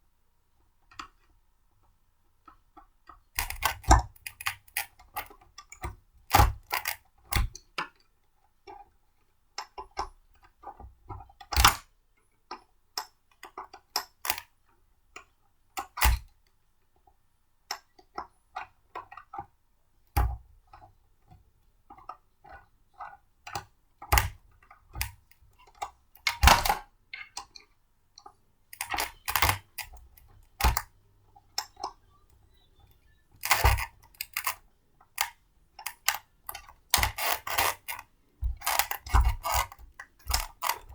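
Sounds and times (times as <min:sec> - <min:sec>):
blender parts clicking and knocking: 0:33.4 - 0:34.6, 0:35.2 - 0:40.9.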